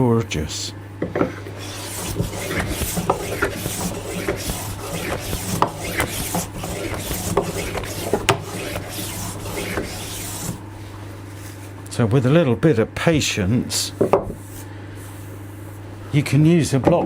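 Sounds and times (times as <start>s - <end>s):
block plane shaving wood: 1.5s - 10.7s.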